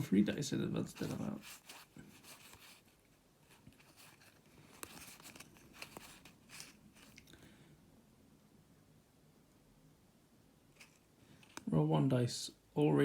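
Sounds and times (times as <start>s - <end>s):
cards rustling: 0.8s - 7.3s, 10.8s - 11.6s
cards clicking: 3.8s - 7.2s.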